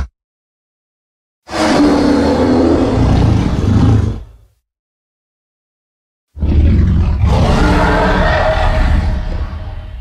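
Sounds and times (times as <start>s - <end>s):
loud creature roar: 1.5s - 4.3s, 6.4s - 10.0s.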